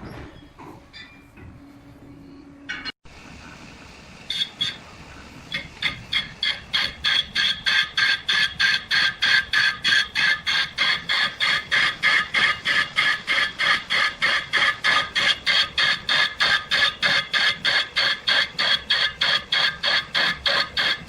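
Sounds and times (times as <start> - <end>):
machine rasping rhythmically: 4.3 - 21.0.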